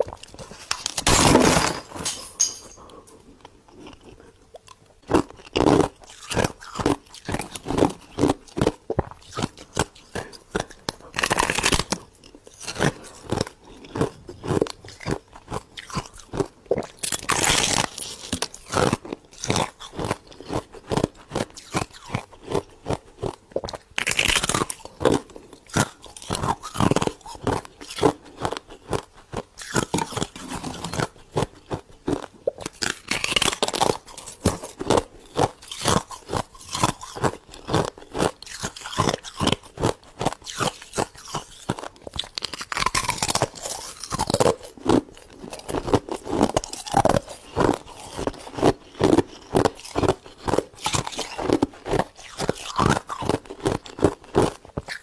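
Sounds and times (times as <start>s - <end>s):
person chewing crunchy frost: 0.0s - 1.8s, 2.8s - 55.0s.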